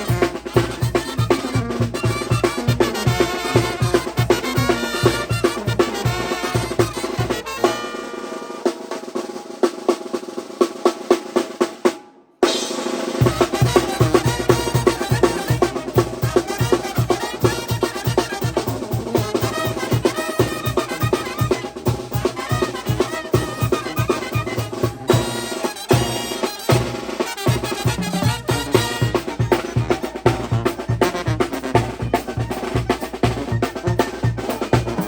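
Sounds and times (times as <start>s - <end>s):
brass band playing: 0.0s - 9.6s, 11.8s - 35.0s
snare and bass drum beat: 0.0s - 35.0s.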